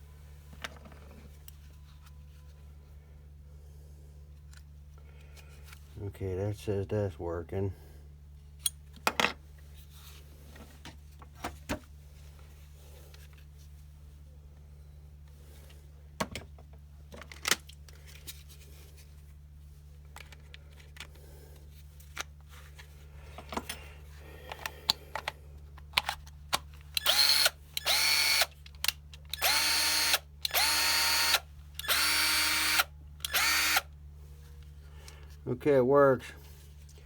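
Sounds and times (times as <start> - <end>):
cordless drill motor whining: 27.0 - 28.5, 29.3 - 33.9.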